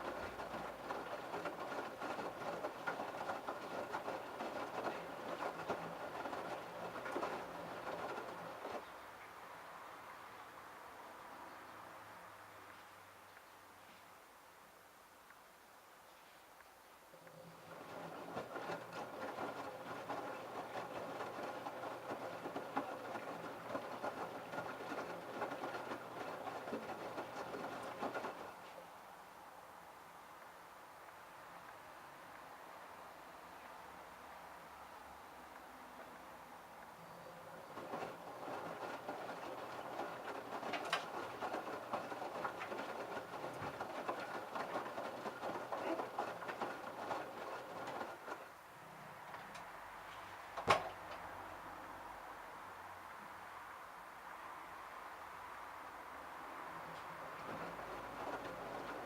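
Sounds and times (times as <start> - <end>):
washing machine load tumbling: 0.0 - 8.9, 17.4 - 28.8, 37.3 - 48.5, 57.0 - 59.0
washing machine motor hum: 0.0 - 8.9, 17.2 - 29.0, 37.0 - 48.6, 56.7 - 59.0.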